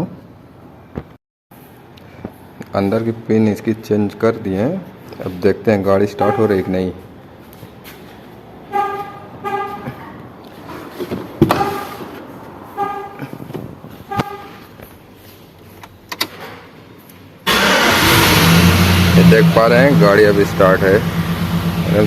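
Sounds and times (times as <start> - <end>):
truck engine starting and running: 17.4 - 22.0.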